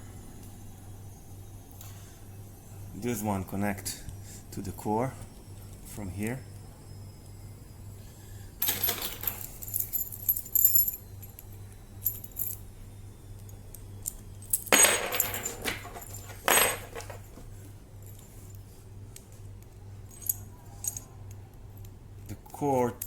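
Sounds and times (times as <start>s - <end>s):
metal parts clinking: 8.6s - 12.6s, 13.4s - 17.4s, 20.1s - 21.9s.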